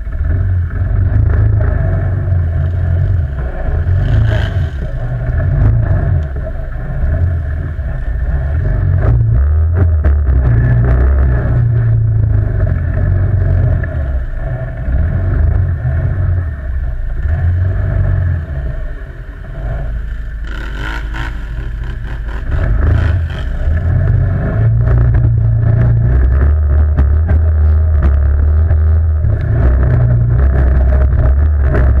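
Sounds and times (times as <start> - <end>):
quad bike engine revving: 0.0 - 7.4, 19.5 - 32.0.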